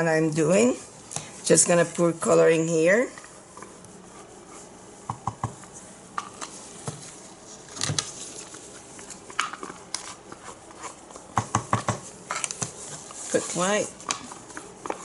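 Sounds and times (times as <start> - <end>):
plastic cups clicking and tapping: 11.2 - 12.8.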